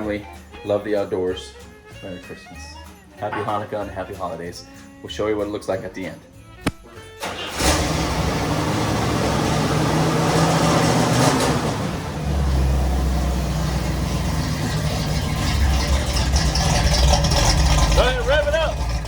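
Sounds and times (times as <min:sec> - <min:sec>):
car engine idling: 0:07.2 - 0:19.0.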